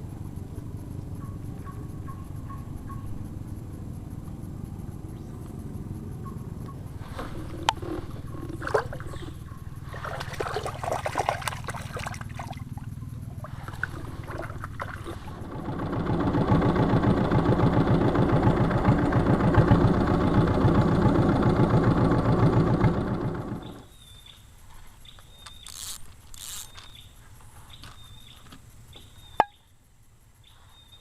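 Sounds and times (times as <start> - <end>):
small boat engine running: 0.0 - 23.9.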